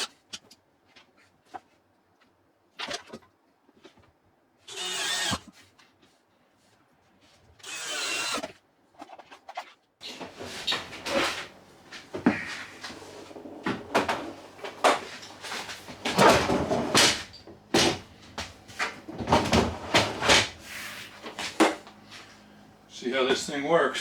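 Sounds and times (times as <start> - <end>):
fridge tray clunking and knocking: 10.0 - 22.4
tray scraping slides: 10.0 - 22.4.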